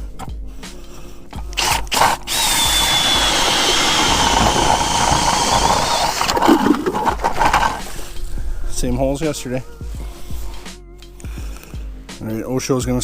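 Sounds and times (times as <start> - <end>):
power ice auger whining: 1.6 - 8.2.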